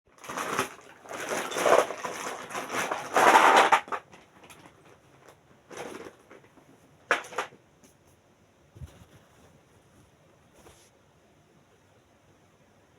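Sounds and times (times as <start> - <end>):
packaging crinkling and rustling: 0.1 - 7.6.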